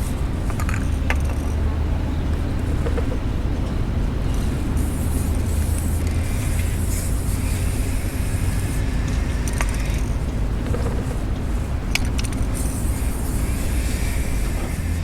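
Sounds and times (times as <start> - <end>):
low engine rumble: 0.0 - 15.0
spray can hissing: 4.8 - 10.3, 12.5 - 15.0.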